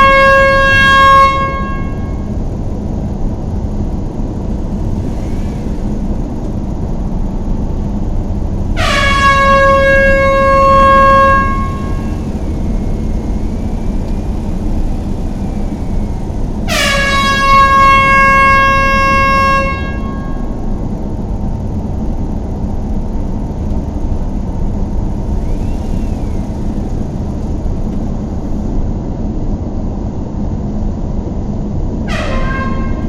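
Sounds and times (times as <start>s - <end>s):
horn blasts: 0.0s - 2.6s, 3.9s - 7.6s, 8.2s - 20.9s, 24.0s - 28.6s, 32.1s - 33.0s
low rumble: 0.0s - 33.0s.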